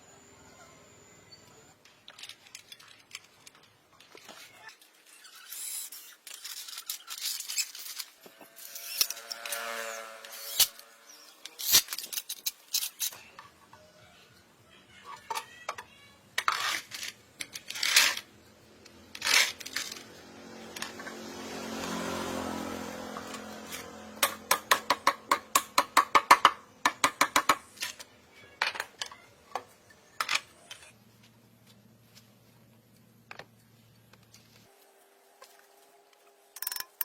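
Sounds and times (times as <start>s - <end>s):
hard objects clicking and knocking: 24.2s - 31.0s, 36.5s - 37.0s.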